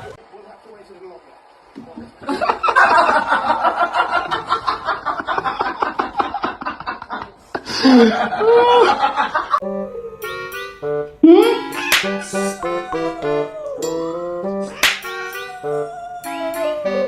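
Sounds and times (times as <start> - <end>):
person laughing hard: 7.6 - 9.3, 12.3 - 13.9
plucked-string music: 9.6 - 17.0
sliding pitch sound: 9.6 - 17.0.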